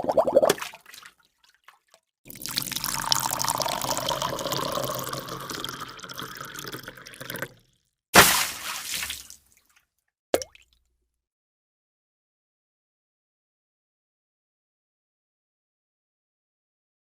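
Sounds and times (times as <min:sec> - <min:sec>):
water pouring: 0:00.0 - 0:09.7.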